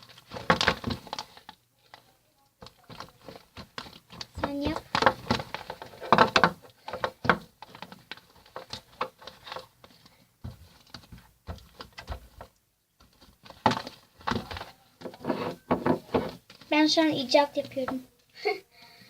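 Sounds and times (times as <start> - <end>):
hands working sticky slime: 0.0 - 18.1.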